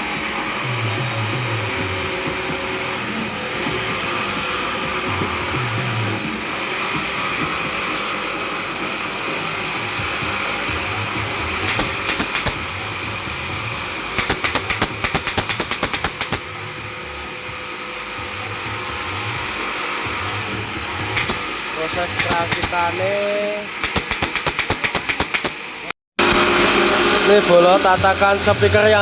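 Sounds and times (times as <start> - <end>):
workshop machine whirring hum: 0.0 - 29.0
rapid sharp clicks: 11.6 - 12.6, 14.2 - 16.5, 21.2 - 21.5, 22.1 - 22.8, 23.8 - 25.6.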